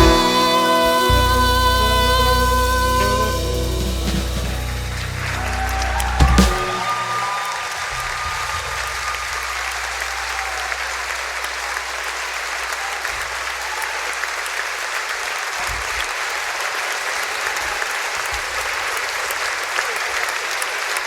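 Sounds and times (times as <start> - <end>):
low thumps: 0.0 - 7.2
audience applauding: 0.0 - 21.0.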